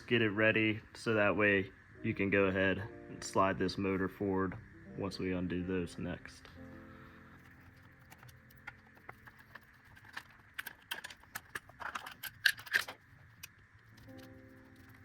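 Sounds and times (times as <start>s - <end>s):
metal tools clicking and clinking: 8.0s - 13.5s.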